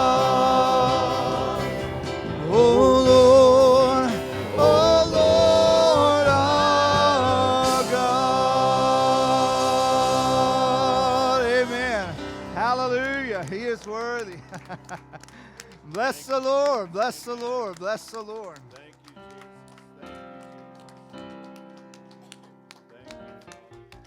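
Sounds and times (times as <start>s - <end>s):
gospel singing with vibrato: 0.0s - 14.4s
backing music: 0.0s - 17.4s.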